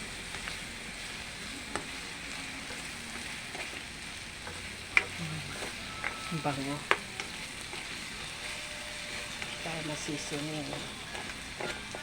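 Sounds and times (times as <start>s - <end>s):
garlic sizzling in oil: 0.0s - 12.0s
utensil clicking against pan: 0.2s - 0.7s, 1.3s - 12.0s.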